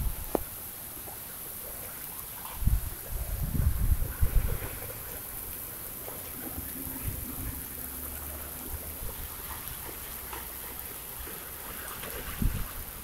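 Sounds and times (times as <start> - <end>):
steady rain and wind: 0.0 - 13.0
water drips and taps: 4.0 - 13.0.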